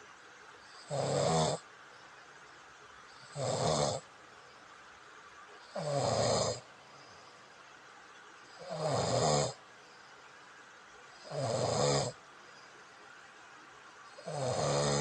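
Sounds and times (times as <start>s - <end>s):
person snoring: 0.7s - 1.6s, 3.2s - 4.0s, 5.7s - 6.6s, 8.5s - 9.6s, 11.2s - 12.2s, 14.1s - 15.0s.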